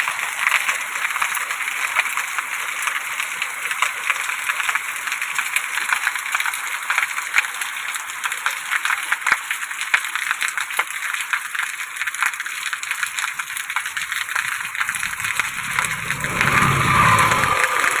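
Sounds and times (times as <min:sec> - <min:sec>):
rain falling: 0:00.0 - 0:18.0
low rumble: 0:14.0 - 0:18.0.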